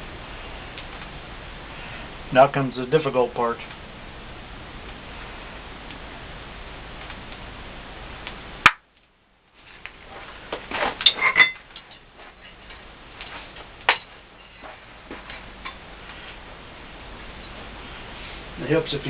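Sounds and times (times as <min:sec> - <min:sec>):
steady hiss: 0:00.0 - 0:19.0.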